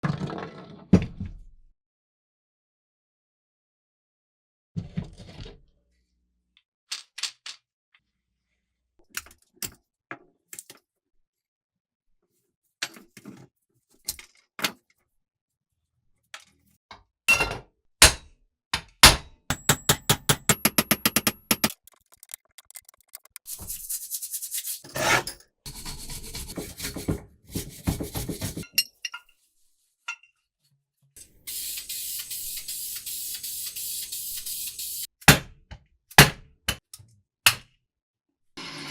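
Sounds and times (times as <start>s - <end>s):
fast even clicks: 20.6s - 23.5s
rubbing and scrubbing: 21.7s - 25.1s, 25.7s - 28.6s.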